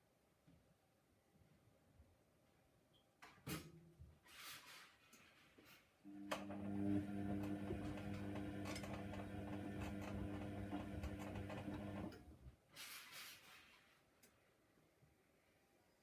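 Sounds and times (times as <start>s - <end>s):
washing machine motor hum: 6.1s - 12.4s.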